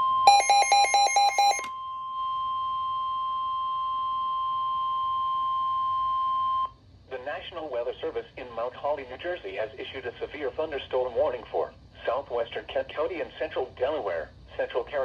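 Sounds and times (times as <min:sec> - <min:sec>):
steady electronic alarm tone: 0:00.0 - 0:01.7.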